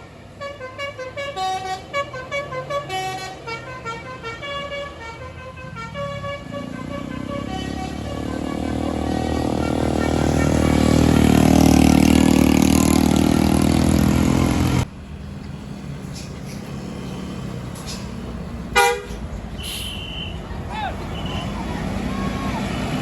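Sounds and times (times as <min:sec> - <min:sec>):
multi-tone bus horn: 0:00.0 - 0:14.8, 0:18.7 - 0:23.0
bus engine passing: 0:00.0 - 0:23.0
road traffic: 0:00.0 - 0:23.0
short horn toot: 0:18.8 - 0:20.5.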